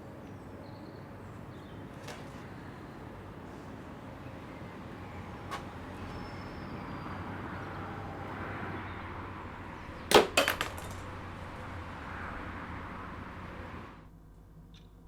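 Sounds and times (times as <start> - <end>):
steady background noise: 0.0 - 15.0
small knocks: 10.0 - 11.7.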